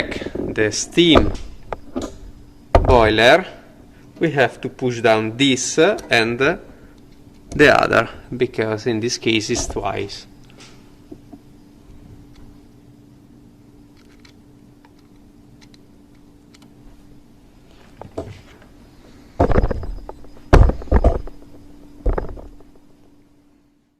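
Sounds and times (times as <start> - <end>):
low hum: 0.0 - 23.9
thumps and rustles of handling: 17.7 - 23.0.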